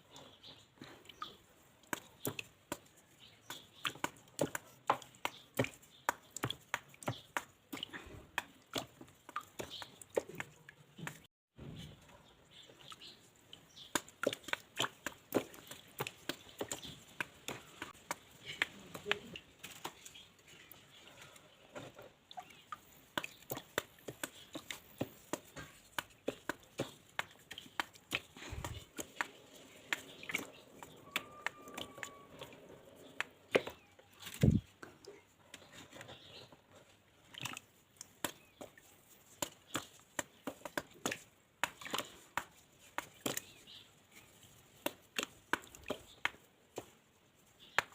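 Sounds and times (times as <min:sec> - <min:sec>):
dry mud crunching: 0:22.5 - 0:34.8.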